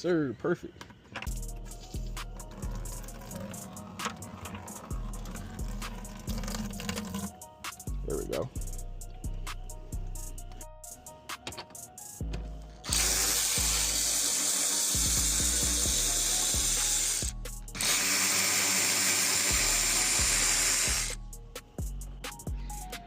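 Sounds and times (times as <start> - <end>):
music with a steady beat: 1.3 - 18.0, 19.4 - 23.0
handheld power tool running: 12.8 - 21.2.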